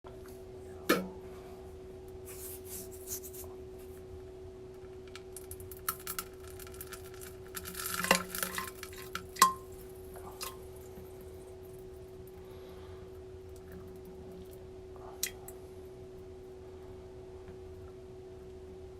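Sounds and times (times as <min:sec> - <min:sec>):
steady low hum: 0:00.1 - 0:18.9
short rustling scrapes: 0:02.2 - 0:03.9.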